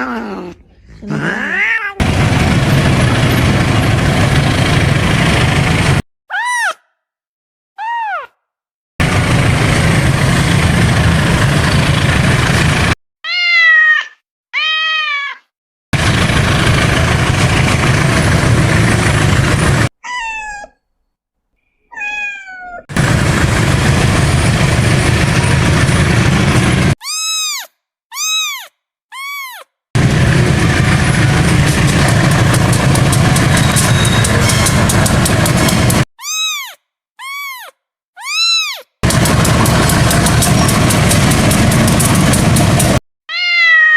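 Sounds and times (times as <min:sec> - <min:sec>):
cat meowing: 0:01.0 - 0:02.0, 0:13.2 - 0:15.4, 0:20.0 - 0:20.8, 0:21.9 - 0:22.8, 0:27.0 - 0:29.6, 0:36.2 - 0:38.9, 0:43.3 - 0:43.9
train rumbling: 0:02.0 - 0:06.0, 0:09.0 - 0:13.0, 0:16.0 - 0:19.9, 0:22.9 - 0:27.0, 0:30.0 - 0:36.1, 0:39.0 - 0:43.0.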